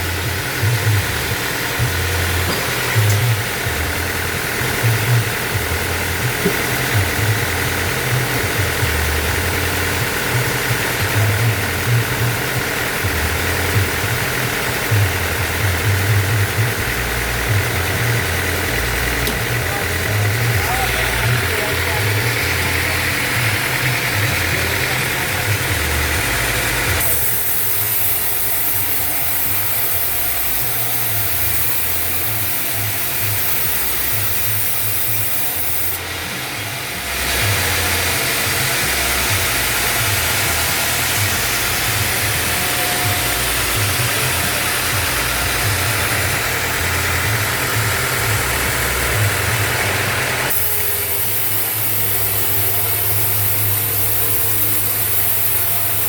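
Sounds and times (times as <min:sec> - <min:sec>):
band sawmill drone: 0:00.0 - 0:56.0
loud high hiss: 0:41.4 - 0:56.0.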